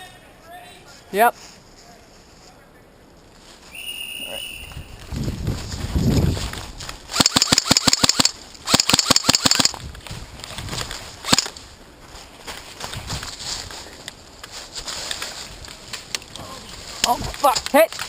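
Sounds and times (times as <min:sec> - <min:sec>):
airsoft rifle bursts: 0:07.1 - 0:09.8, 0:11.2 - 0:11.5.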